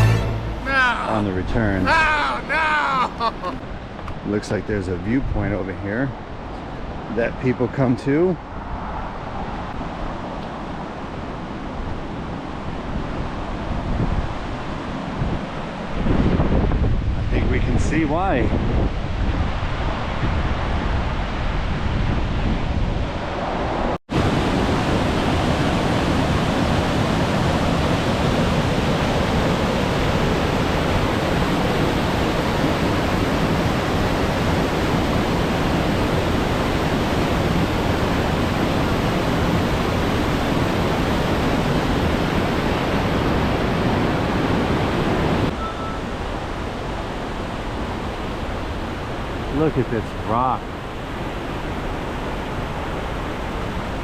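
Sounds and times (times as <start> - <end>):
waterfall rushing into pool: 0.0 - 3.6, 24.1 - 50.6.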